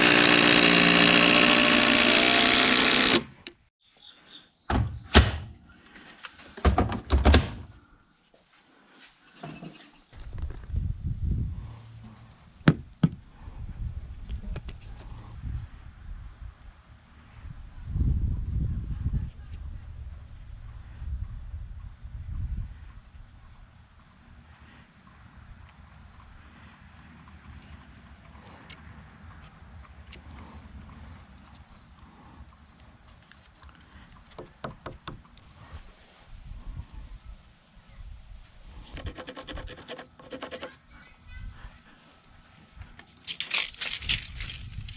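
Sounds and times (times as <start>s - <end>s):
knocks on wood: 12.6s - 13.2s, 34.4s - 35.2s.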